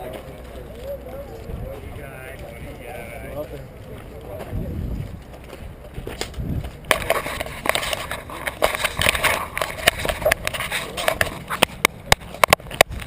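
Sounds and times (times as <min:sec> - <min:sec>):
footsteps: 0:00.0 - 0:13.0
clothing and gear rustling: 0:04.0 - 0:11.8.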